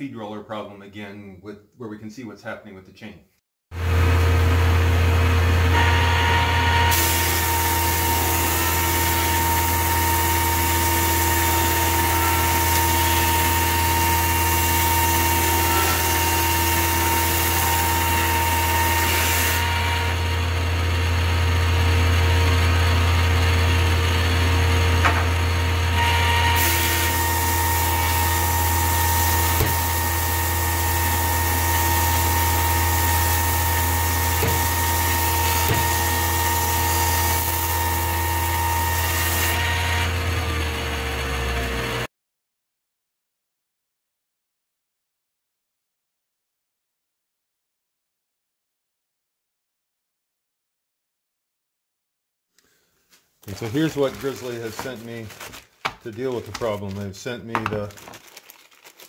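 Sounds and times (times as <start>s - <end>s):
planer humming and whining: 3.8s - 42.1s.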